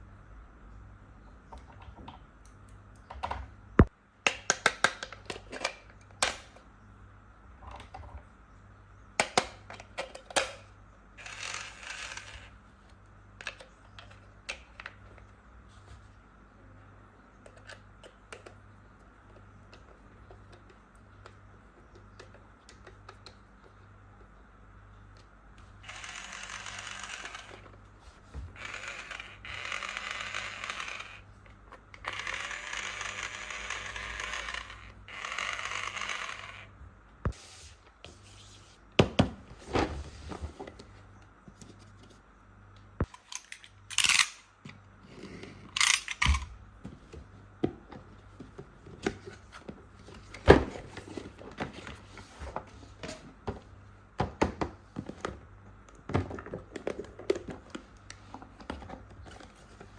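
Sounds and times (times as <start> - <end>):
toy drill motor whirring: 11.2 - 12.6, 25.8 - 27.8, 28.5 - 31.3, 32.0 - 36.8, 43.1 - 44.5, 45.8 - 46.5
plastic toy parts clicking: 43.0 - 44.5, 45.8 - 46.5.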